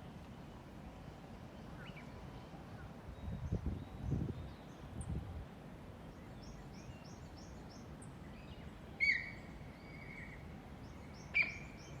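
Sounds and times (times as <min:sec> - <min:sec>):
bird calling: 0:09.0 - 0:10.4, 0:11.0 - 0:12.0.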